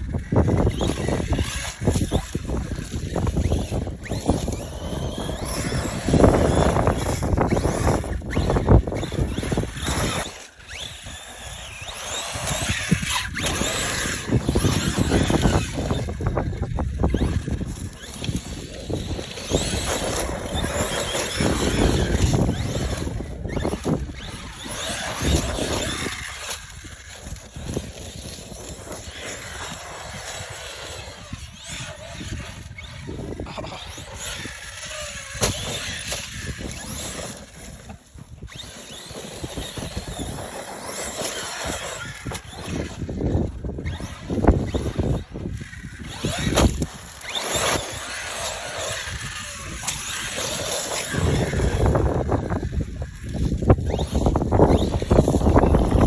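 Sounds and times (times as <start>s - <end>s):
rc car motor whining: 0.0s - 56.0s.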